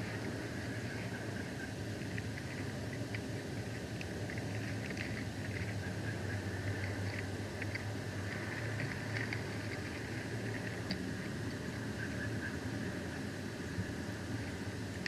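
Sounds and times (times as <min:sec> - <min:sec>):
faint ticks: 0:00.0 - 0:11.6
low hum: 0:00.0 - 0:15.0.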